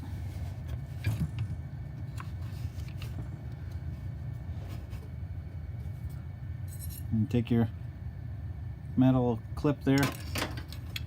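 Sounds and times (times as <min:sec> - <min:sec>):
clicks and knocks of machine parts: 0:10.0 - 0:11.0.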